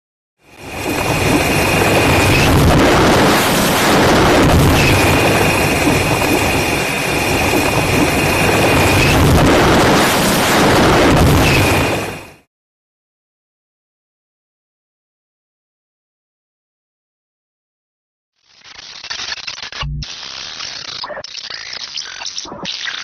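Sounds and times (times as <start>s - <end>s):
synthesized noise over low rumble: 0.5s - 11.8s.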